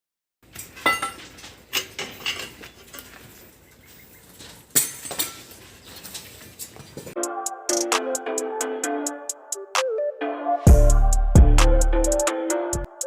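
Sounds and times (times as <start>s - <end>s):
metallic clinks and scrapes: 0.5s - 3.5s, 4.4s - 7.1s.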